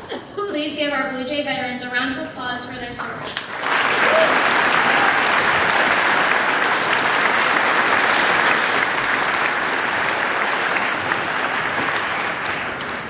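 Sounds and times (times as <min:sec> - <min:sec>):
audience applauding: 0:03.4 - 0:13.0.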